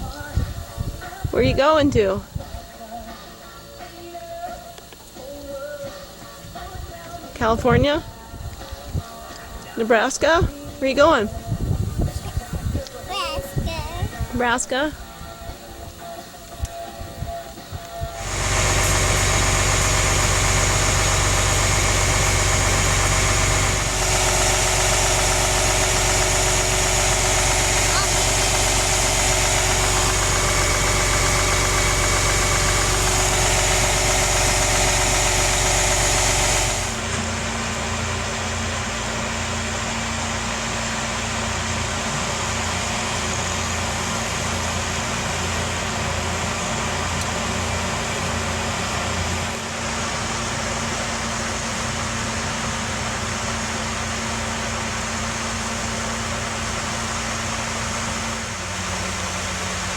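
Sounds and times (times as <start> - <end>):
engine drone: 18.0 - 59.9
low hum: 18.1 - 41.0.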